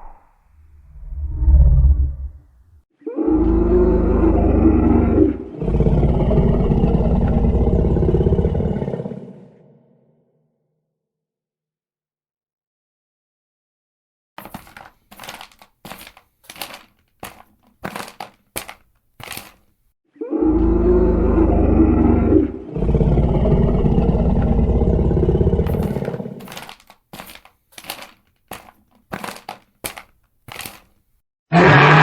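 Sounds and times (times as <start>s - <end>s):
long low dinosaur roars: 3.0s - 10.0s, 20.2s - 26.5s, 31.5s - 32.0s.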